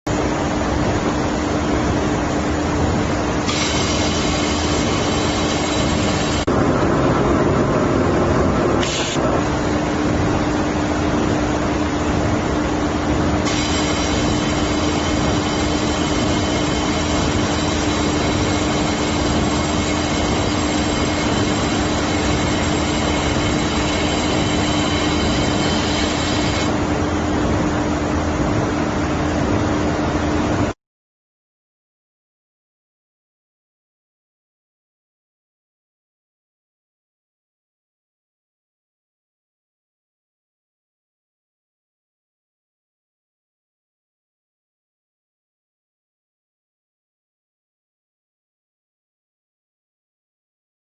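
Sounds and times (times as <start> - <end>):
machine hum: 0.1 - 30.8
high-pitched whine: 2.2 - 30.8
constant rushing hiss: 13.5 - 26.8.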